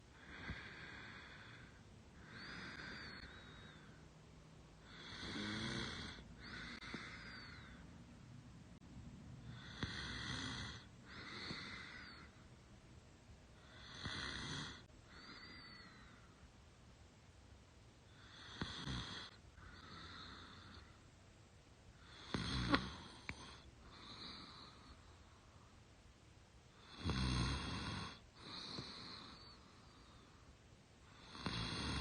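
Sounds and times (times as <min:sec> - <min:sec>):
woman snoring: 0:00.2 - 0:03.9, 0:04.8 - 0:07.8, 0:09.5 - 0:12.3, 0:13.6 - 0:16.2, 0:18.1 - 0:20.9, 0:22.0 - 0:25.0, 0:26.8 - 0:29.6, 0:31.1 - 0:32.0.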